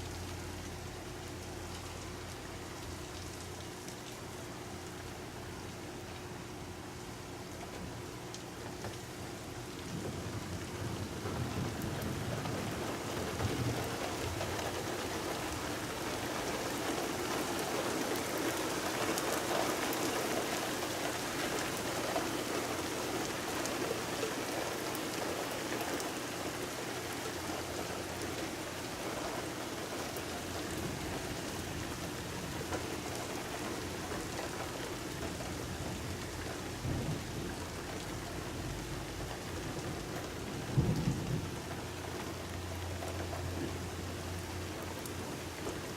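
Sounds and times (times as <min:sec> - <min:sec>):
heavy rain pattering: 0:00.0 - 0:45.9
low thunder rumbles: 0:09.9 - 0:14.4, 0:35.2 - 0:41.9.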